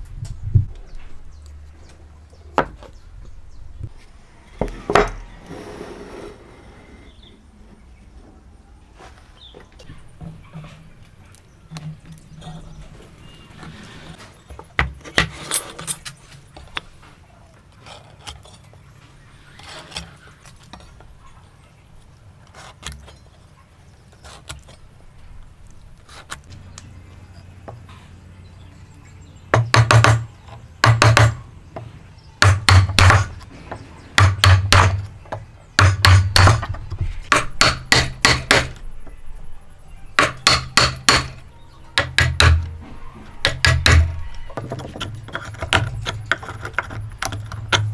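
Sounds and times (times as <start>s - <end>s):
hammer striking wood: 29.5s - 31.4s, 32.4s - 33.4s, 34.2s - 38.8s, 40.2s - 41.4s, 42.0s - 47.9s.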